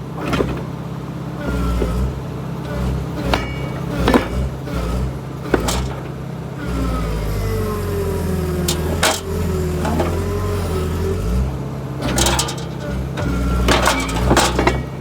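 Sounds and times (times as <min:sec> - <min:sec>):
excavator diesel engine: 0:00.0 - 0:15.0
metal clanks of steel on steel: 0:03.2 - 0:04.5, 0:05.5 - 0:06.2, 0:08.6 - 0:10.9, 0:12.0 - 0:15.0.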